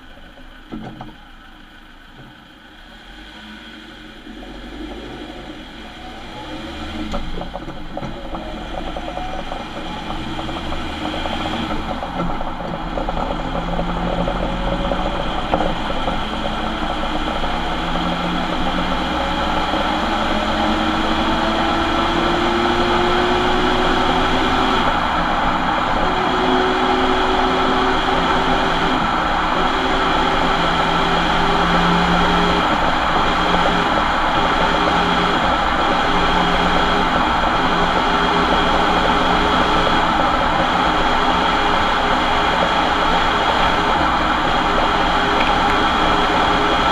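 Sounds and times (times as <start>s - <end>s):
differential whine: 0.0s - 46.9s
engine and road noise: 0.0s - 46.9s.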